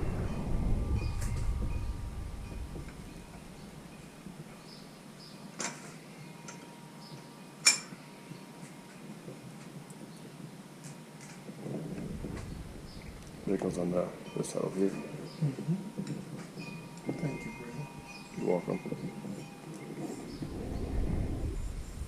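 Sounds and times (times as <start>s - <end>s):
low rumble: 0.0s - 4.7s, 11.7s - 14.3s, 20.3s - 22.0s.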